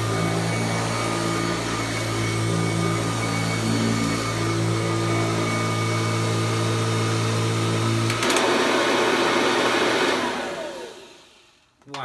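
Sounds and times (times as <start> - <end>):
motor winding down whine: 0.0 - 8.3
vacuum cleaner motor hum: 0.0 - 11.5
vacuum cleaner click: 8.0 - 11.0.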